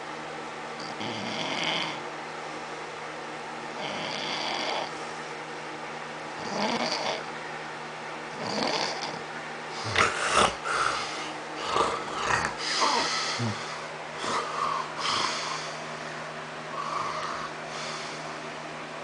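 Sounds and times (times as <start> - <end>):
man snoring: 0.8 - 2.0, 3.8 - 4.9, 6.4 - 7.2, 8.4 - 9.2, 9.8 - 15.7, 16.7 - 18.2.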